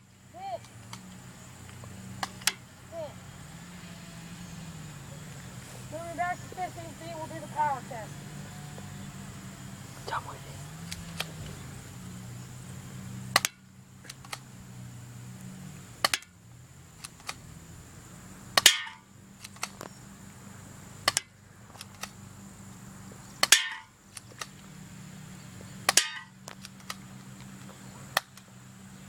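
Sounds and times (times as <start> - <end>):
pistol clicks: 2.2 - 2.6, 13.3 - 14.4, 16.0 - 16.3, 17.0 - 17.4, 18.6 - 19.9, 21.0 - 22.2, 23.4 - 24.6, 25.9 - 27.5, 28.2 - 28.5
airsoft pistol shots: 13.3 - 13.6, 16.0 - 16.3, 18.6 - 19.7, 23.4 - 23.9, 25.9 - 26.3
pellet striking metal can: 23.4 - 23.9, 25.9 - 26.3.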